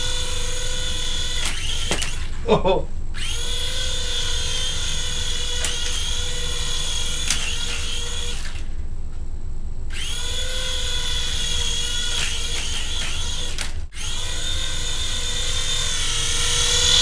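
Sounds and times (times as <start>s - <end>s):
toy motors whining: 0.0s - 2.6s, 3.2s - 8.8s, 9.9s - 17.0s
sharp clicks: 1.4s - 2.4s, 5.5s - 6.3s, 7.0s - 8.7s, 11.7s - 14.0s.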